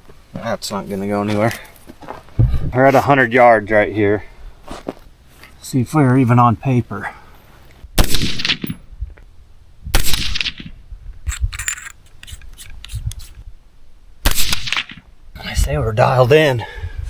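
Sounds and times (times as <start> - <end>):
rifle shots: 8.0 - 8.8, 10.0 - 10.7, 14.3 - 15.0.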